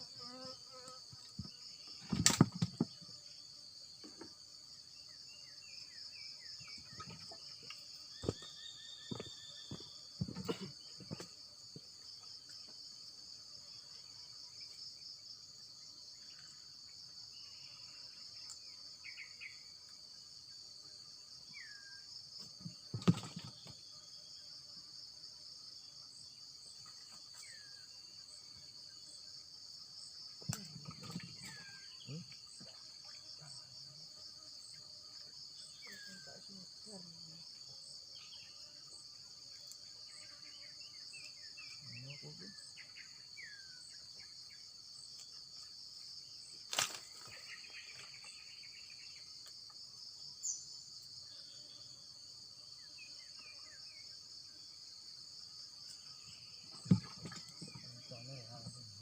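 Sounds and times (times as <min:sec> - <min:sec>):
insect chorus trilling: 0:00.0 - 0:59.0.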